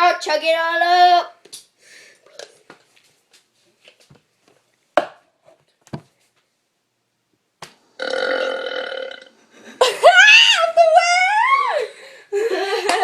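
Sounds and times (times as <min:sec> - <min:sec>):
loud long burp: 0:08.0 - 0:09.4.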